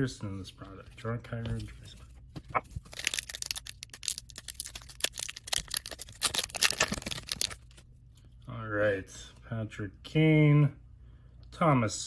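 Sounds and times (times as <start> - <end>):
wrapper and cards crinkling: 2.5 - 7.9.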